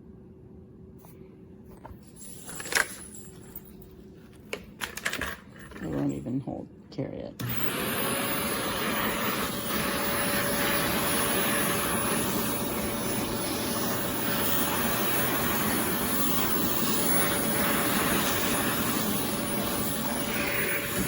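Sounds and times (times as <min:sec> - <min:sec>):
vacuum cleaner running: 0:07.4 - 0:21.0.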